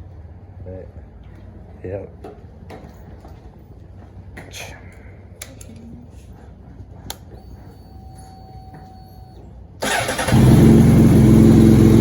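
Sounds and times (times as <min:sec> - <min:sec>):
faint steady whine: 0:04.8 - 0:09.8
motorcycle engine starting and running: 0:09.8 - 0:12.0.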